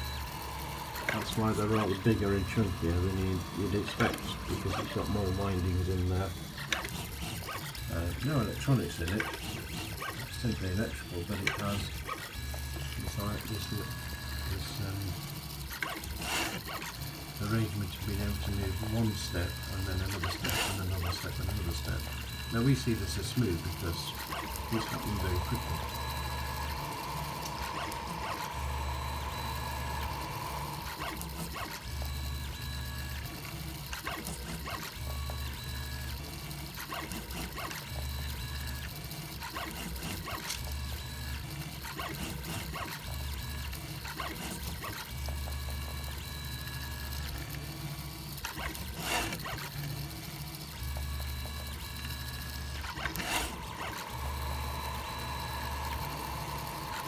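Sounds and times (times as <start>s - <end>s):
steady high tones: 0.0s - 6.5s, 17.4s - 33.2s, 51.0s - 57.0s
stepper motors humming: 0.0s - 57.0s.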